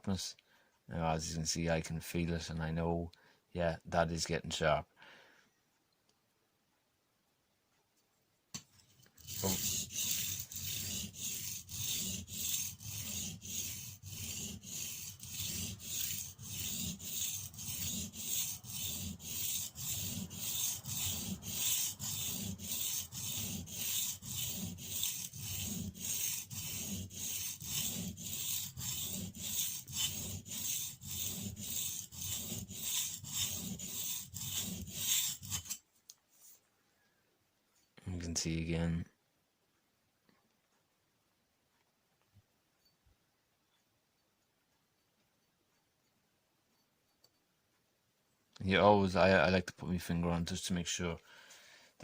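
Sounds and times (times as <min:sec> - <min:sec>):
blade scraping on whetstone: 0:08.9 - 0:35.8.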